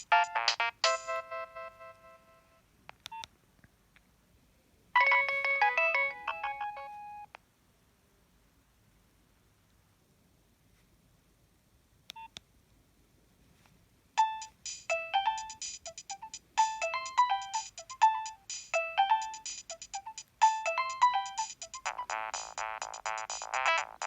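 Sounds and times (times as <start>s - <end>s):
phone ringtone melody: 0.0s - 2.4s, 5.0s - 7.3s, 14.2s - 24.0s.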